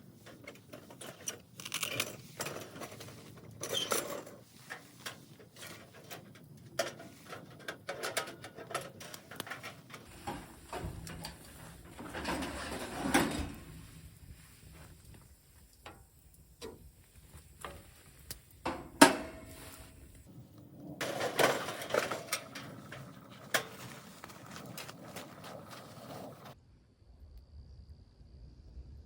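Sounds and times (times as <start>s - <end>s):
objects being handled: 0.0s - 15.3s.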